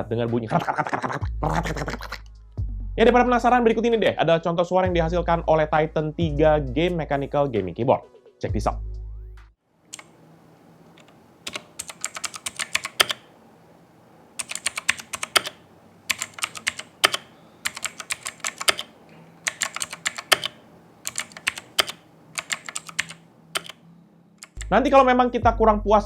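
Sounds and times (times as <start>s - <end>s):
clicky keyboard keystrokes: 9.9s - 10.1s, 11.0s - 13.3s, 14.4s - 23.8s, 24.4s - 24.7s.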